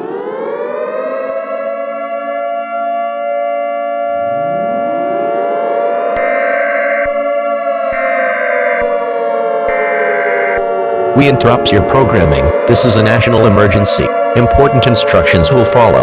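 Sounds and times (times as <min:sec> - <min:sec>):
sirens wailing: 0:00.0 - 0:16.0
pulsing high tone: 0:03.6 - 0:09.0, 0:09.7 - 0:16.0.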